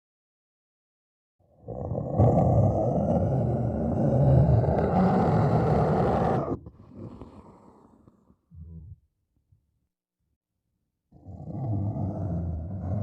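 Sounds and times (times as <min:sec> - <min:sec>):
faint rasping growl: 0:01.4 - 0:09.1, 0:11.1 - 0:13.0
monster roar: 0:01.6 - 0:06.6.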